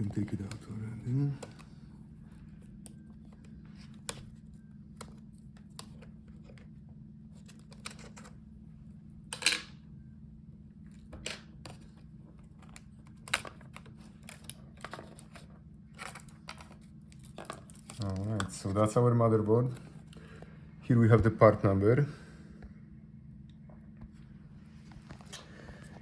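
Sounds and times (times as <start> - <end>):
steady low hum: 0.0 - 26.0
laptop parts clicking and scraping: 7.3 - 8.4, 11.6 - 18.8.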